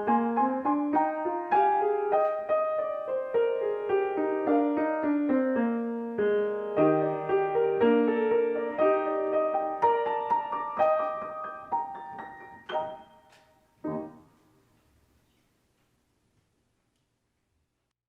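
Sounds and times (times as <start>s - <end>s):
solo piano playing slowly: 0.0s - 14.4s.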